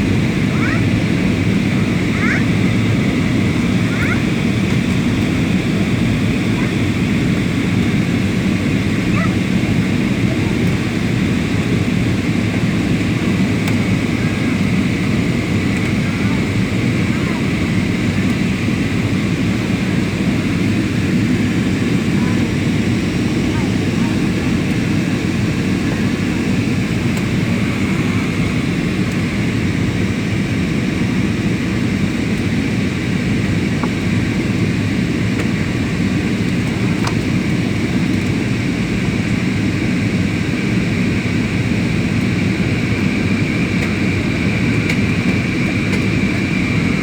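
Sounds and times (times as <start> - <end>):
airliner engine roar in cabin: 0.0 - 47.0.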